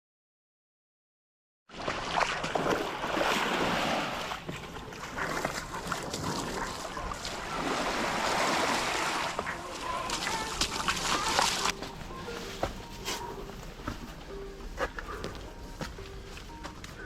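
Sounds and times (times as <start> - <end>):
waves lapping on rocky shore: 2.6 - 11.7.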